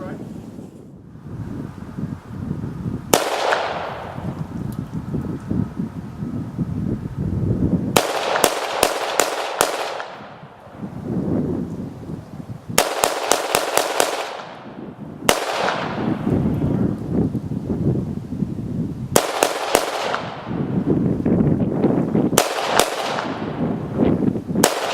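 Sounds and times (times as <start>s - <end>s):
gunshots with echo: 3.1s - 4.3s, 8.0s - 10.6s, 12.8s - 16.2s, 19.2s - 20.6s, 22.4s - 23.6s, 24.6s - 24.9s.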